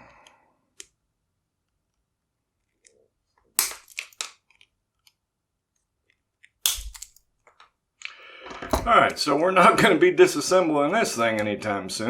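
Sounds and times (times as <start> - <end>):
metal tool clicking in padlock: 6.5 - 7.2.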